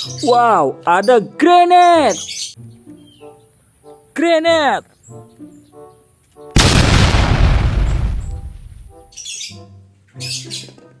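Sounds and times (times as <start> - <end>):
grenade explosion boom: 6.6 - 9.0.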